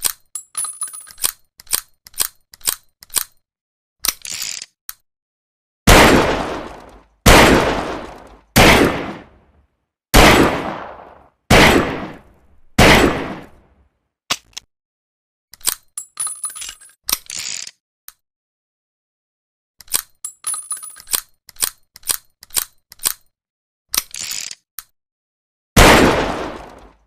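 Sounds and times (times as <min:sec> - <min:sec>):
revolver gunshots: 0:05.9 - 0:09.4, 0:10.2 - 0:13.6, 0:25.8 - 0:27.0.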